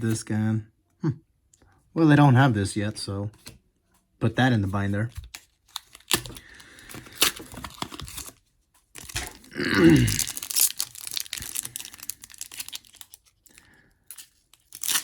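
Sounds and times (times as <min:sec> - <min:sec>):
card pack wrapper tearing: 0:04.8 - 0:15.0.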